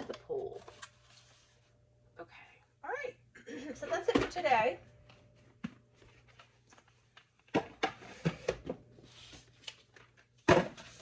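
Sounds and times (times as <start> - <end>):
household items knocking and clattering: 7.5 - 8.9, 10.4 - 11.0.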